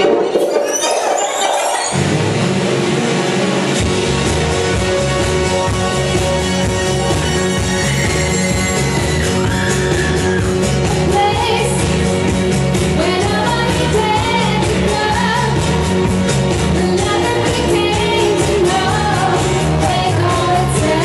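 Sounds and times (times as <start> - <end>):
pop song with singer: 6.8 - 21.0.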